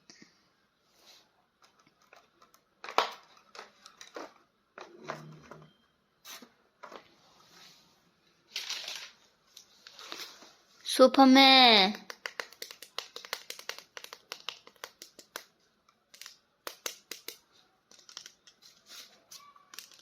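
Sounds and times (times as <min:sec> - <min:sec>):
plastic packaging crinkling and clicking: 0:01.6 - 0:05.6, 0:08.5 - 0:10.3, 0:12.0 - 0:20.0.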